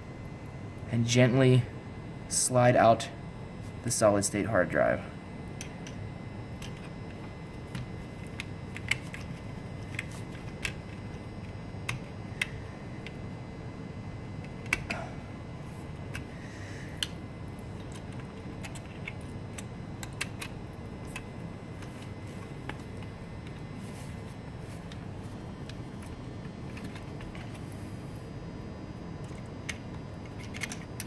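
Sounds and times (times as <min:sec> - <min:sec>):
steady low hum: 0:00.0 - 0:31.0
small parts clicking and tapping: 0:06.6 - 0:13.2, 0:14.4 - 0:15.0, 0:17.8 - 0:27.6, 0:29.2 - 0:31.0.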